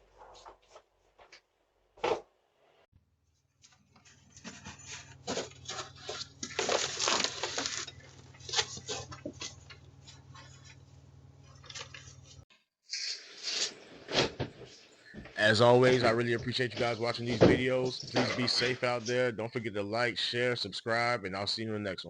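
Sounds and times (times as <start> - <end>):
objects clattering and clinking: 4.0 - 10.8.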